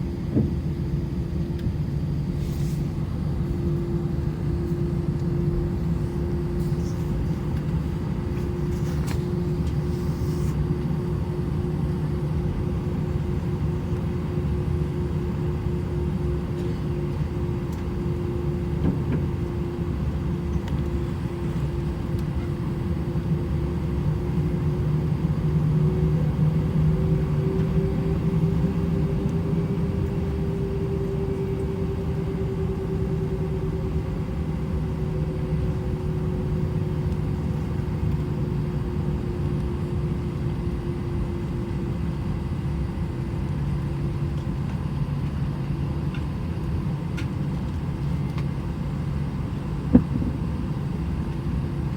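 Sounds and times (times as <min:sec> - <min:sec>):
aircraft cabin engine rumble: 0:00.0 - 0:51.9
engine hum: 0:49.9 - 0:50.9.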